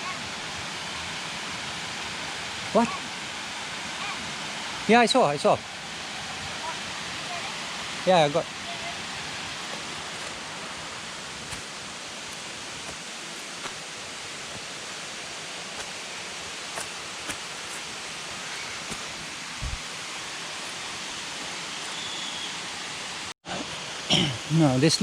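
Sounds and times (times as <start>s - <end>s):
waterfall rushing: 0.0s - 25.0s
soft thump: 19.6s - 19.8s.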